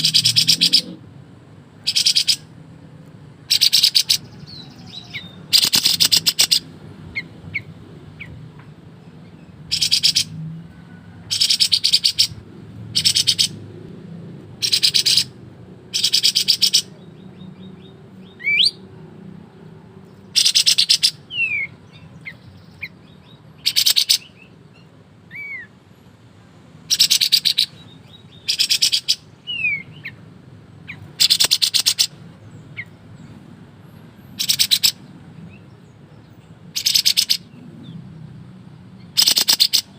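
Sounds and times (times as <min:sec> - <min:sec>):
bird calling in rattling bursts: 0:00.0 - 0:01.0, 0:01.8 - 0:02.5, 0:03.5 - 0:07.7, 0:09.7 - 0:10.3, 0:11.3 - 0:13.6, 0:14.6 - 0:16.9, 0:20.3 - 0:21.8, 0:23.6 - 0:24.4, 0:26.9 - 0:27.8, 0:28.4 - 0:30.2, 0:30.8 - 0:33.0, 0:34.2 - 0:35.1, 0:36.7 - 0:37.6, 0:39.0 - 0:39.9.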